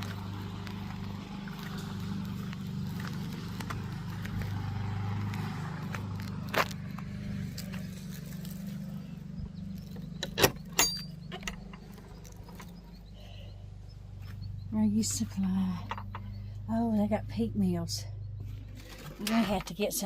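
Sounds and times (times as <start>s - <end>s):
footsteps on stone steps: 0.0s - 8.3s
steady low hum: 0.0s - 20.0s
sharp clicks and knocks: 9.8s - 13.1s, 15.5s - 16.4s.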